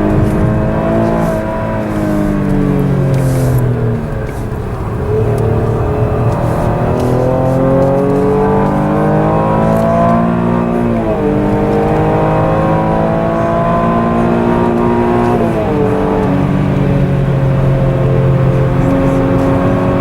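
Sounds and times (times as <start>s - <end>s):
car engine accelerating hard: 0.0s - 20.0s.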